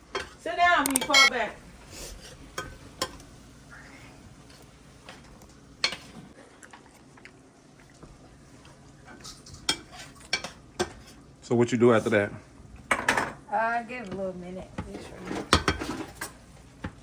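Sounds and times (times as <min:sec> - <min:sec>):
low kitchen background: 0:00.0 - 0:17.0.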